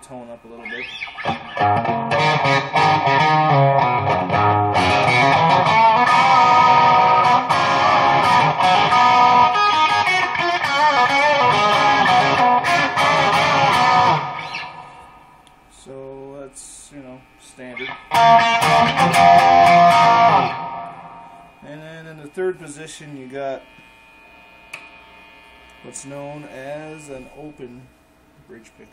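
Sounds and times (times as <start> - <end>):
overdriven electric guitar playing: 0.6 - 15.5, 17.7 - 21.6.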